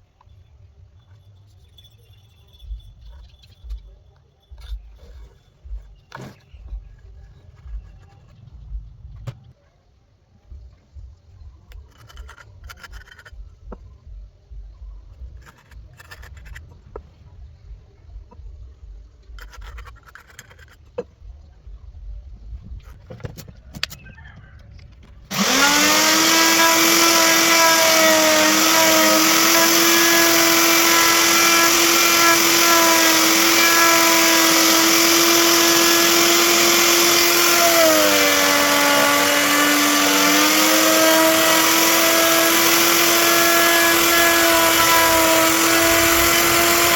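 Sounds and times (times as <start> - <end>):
power tool whining: 25.3 - 46.9.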